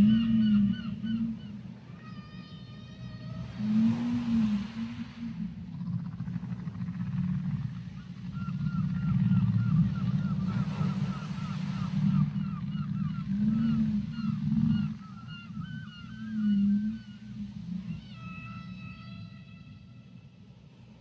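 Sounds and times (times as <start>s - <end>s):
whale low rumbling moan: 0.0s - 21.0s
whale squeaky chirps: 8.1s - 19.8s.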